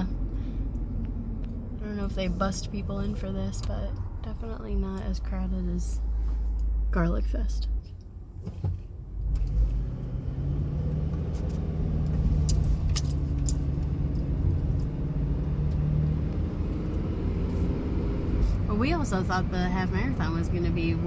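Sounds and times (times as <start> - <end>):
car engine hum and road rumble: 0.0 - 21.0
light clicks or jingles: 12.4 - 14.9.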